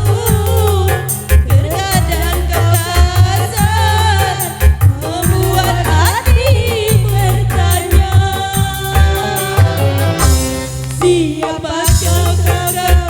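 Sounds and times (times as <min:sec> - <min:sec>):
dance remix music: 0:07.8 - 0:13.0.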